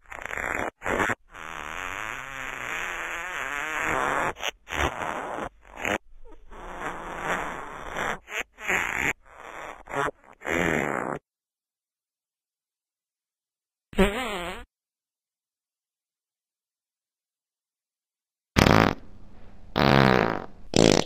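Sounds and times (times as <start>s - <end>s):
farting: 0.0s - 11.2s, 13.9s - 14.7s, 18.6s - 19.0s, 19.8s - 21.0s.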